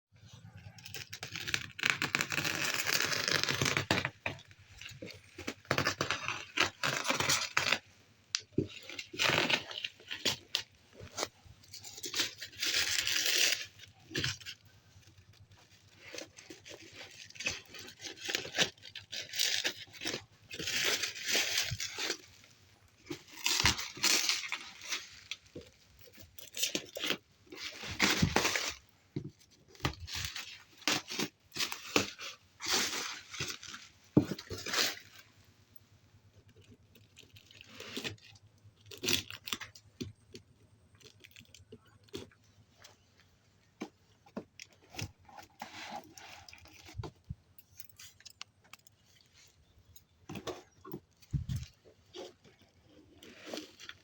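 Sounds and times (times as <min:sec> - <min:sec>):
packaging crinkling and tearing: 0:00.6 - 0:28.9, 0:29.5 - 0:35.3, 0:36.5 - 0:42.4.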